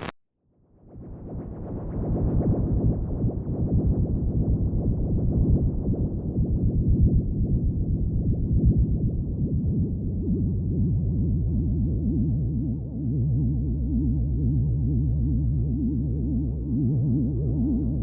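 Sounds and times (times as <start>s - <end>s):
low pulsing electronic drone: 0.0s - 18.0s.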